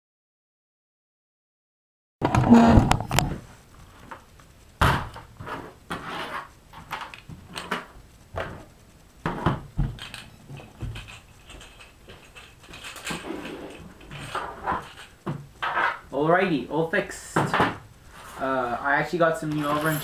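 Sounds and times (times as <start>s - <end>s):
small parts and tools clattering: 5.0s - 16.1s, 17.2s - 20.0s.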